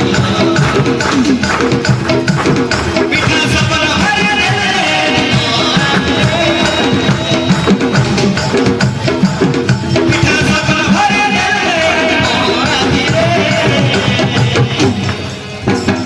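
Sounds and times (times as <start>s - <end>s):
drum and percussion rhythm: 0.0s - 16.0s.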